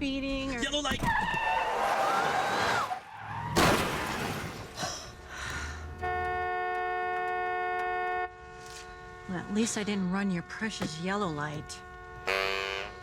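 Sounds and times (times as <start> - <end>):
car tyres screeching: 1.0 - 4.8
car crash: 1.1 - 5.2
car horn sounding steadily: 5.9 - 13.0.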